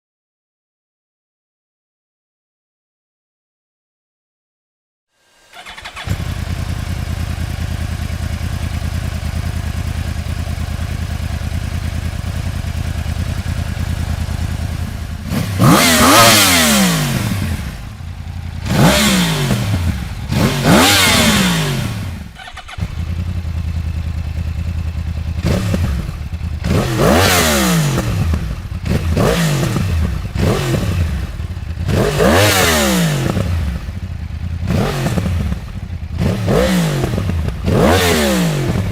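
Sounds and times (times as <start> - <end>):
motorcycle engine idling and revving: 5.5 - 38.9.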